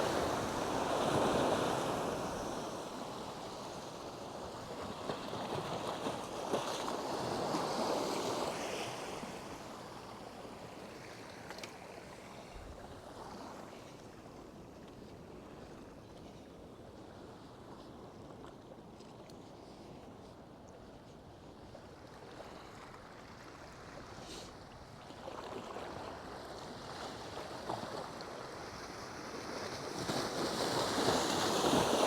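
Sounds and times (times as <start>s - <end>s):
waves washing in: 0.0s - 14.6s.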